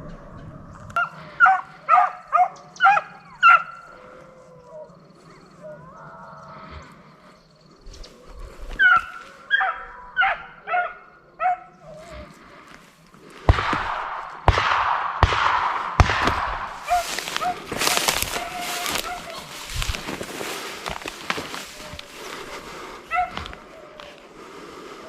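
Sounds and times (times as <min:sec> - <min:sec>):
dog barking: 0:01.0 - 0:03.8, 0:08.8 - 0:11.8, 0:16.9 - 0:17.7, 0:18.5 - 0:19.5, 0:23.1 - 0:23.4
loud rustling: 0:16.2 - 0:23.6.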